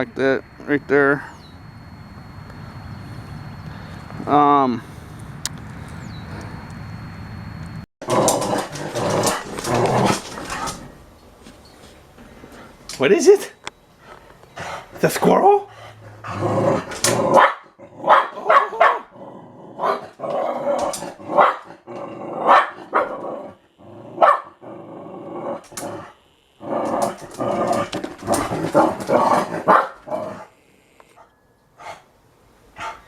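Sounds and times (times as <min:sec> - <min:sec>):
dog growling: 0:08.0 - 0:11.0, 0:14.6 - 0:30.9
dog barking: 0:17.3 - 0:19.1, 0:19.8 - 0:20.1, 0:21.3 - 0:21.8, 0:22.4 - 0:23.5, 0:24.1 - 0:24.6, 0:27.8 - 0:30.5, 0:32.8 - 0:33.0.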